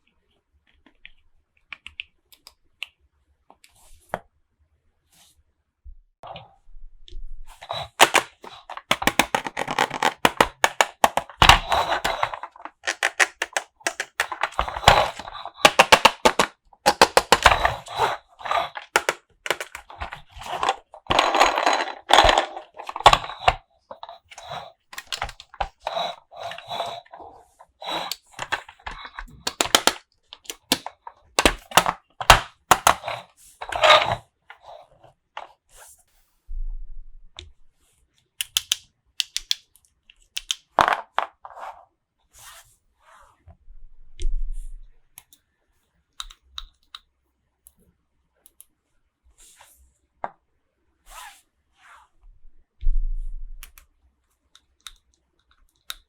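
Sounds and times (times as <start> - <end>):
plastic toy pieces clicking: 7.6 - 27.2, 27.8 - 34.8, 38.4 - 41.4, 46.2 - 47.0
plastic wrappers crinkling: 7.6 - 34.2.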